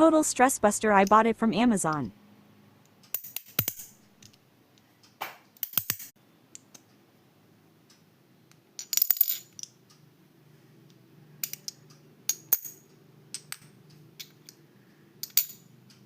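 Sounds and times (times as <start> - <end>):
magnetic pieces clicking together: 3.0 - 6.9, 11.4 - 12.8.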